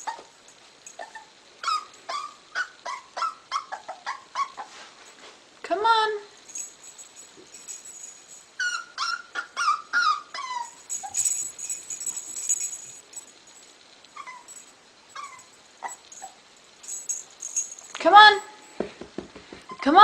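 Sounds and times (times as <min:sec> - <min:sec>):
puppy whimpering: 0:01.0 - 0:04.7, 0:08.6 - 0:12.7, 0:14.2 - 0:14.6, 0:15.2 - 0:16.4.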